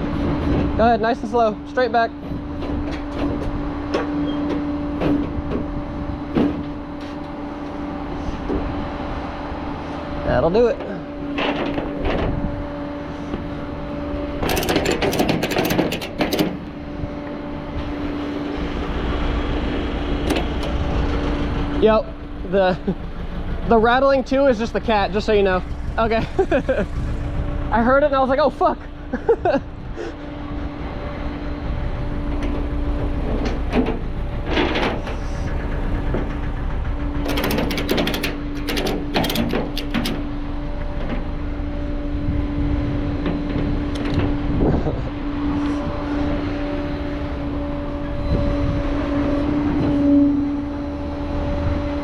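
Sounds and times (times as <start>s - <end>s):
vehicle engine humming: 0.0s - 52.0s
dense metallic rattle: 10.3s - 17.2s, 17.8s - 30.4s, 31.0s - 42.2s
clattering rattles: 11.3s - 12.5s, 14.4s - 16.8s, 20.2s - 21.3s, 32.3s - 41.3s.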